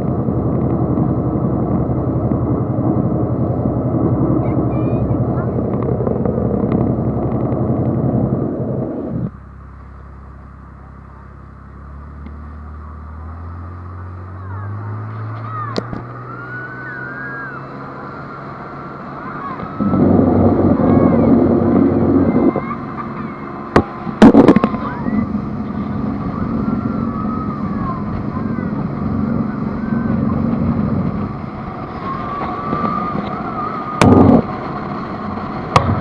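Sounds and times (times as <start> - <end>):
loud rushing noise: 0.0 - 9.4, 14.8 - 36.0
speedboat engine speeding up: 0.0 - 36.0
sharp bangs: 19.6 - 36.0.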